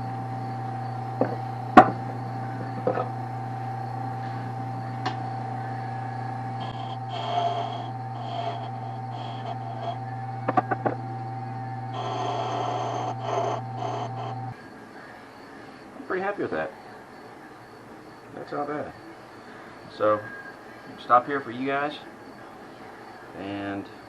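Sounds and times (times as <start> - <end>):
wood lathe humming and whining: 0.0 - 14.6
turning tool scraping wood: 6.6 - 11.0, 11.9 - 14.5.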